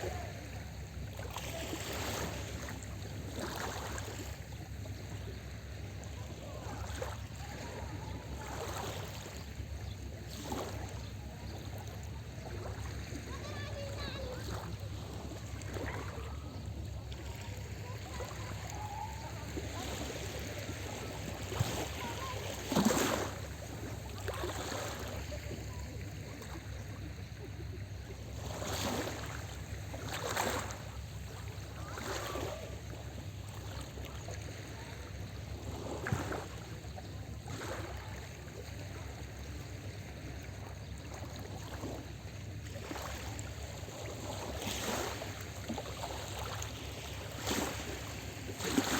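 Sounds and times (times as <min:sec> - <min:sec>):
small waves splashing on shore: 0:00.0 - 0:48.9.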